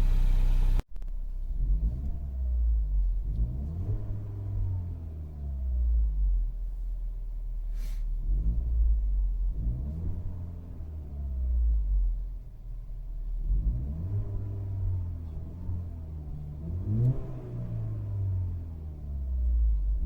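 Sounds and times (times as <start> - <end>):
car engine revving: 0.0 - 0.8, 1.5 - 5.8.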